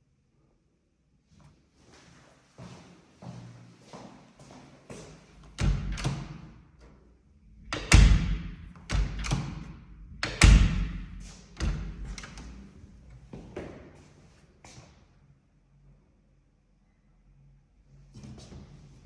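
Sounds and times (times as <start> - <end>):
heavy echoing thumps: 7.6 - 12.4.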